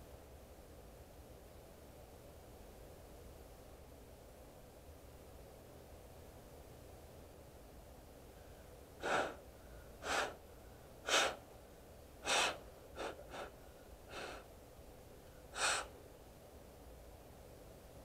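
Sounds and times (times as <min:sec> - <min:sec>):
person breathing sharply: 0:08.4 - 0:10.4, 0:11.0 - 0:11.4, 0:12.2 - 0:14.5, 0:15.5 - 0:16.0.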